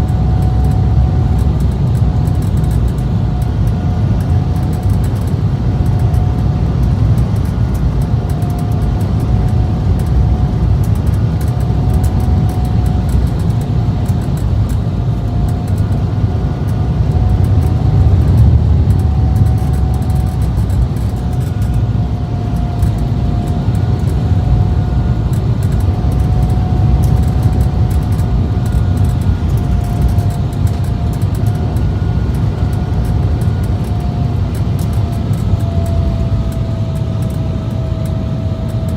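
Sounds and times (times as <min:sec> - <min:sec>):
airplane cabin rumble: 0:00.0 - 0:38.9
jet engine whine: 0:00.0 - 0:38.9.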